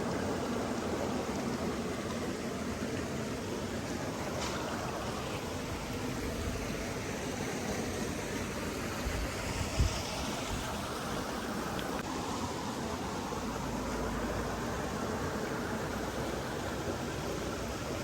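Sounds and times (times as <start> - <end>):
flowing water rushing: 0.0 - 18.0.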